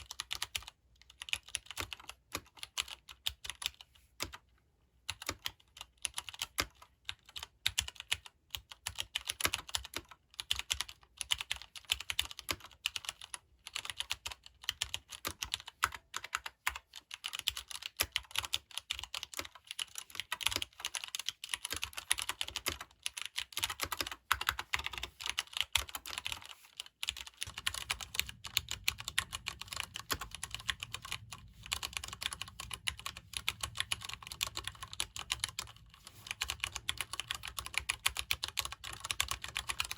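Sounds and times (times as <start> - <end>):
faint low hum: 25.9 - 39.9.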